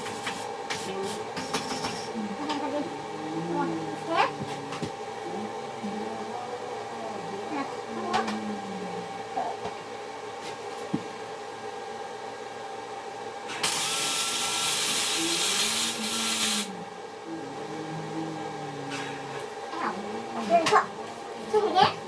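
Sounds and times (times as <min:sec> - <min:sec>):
welding arc hiss: 0:13.6 - 0:16.7.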